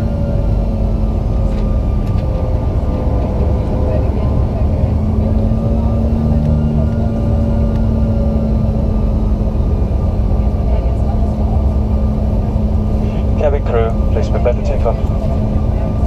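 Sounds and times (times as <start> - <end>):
jet engines rushing hum in cabin: 0.0 - 16.0.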